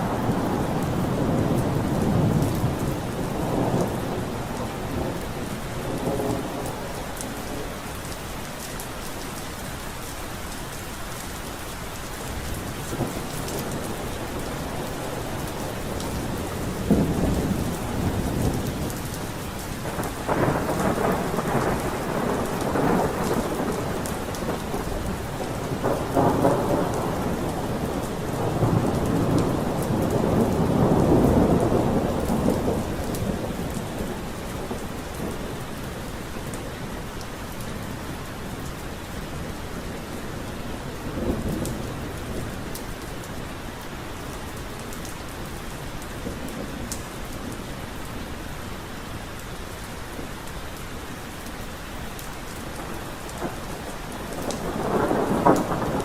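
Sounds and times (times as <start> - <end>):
thunder rumbling: 0.0 - 7.8, 12.9 - 37.1, 52.7 - 56.0
steady rain: 0.0 - 56.0.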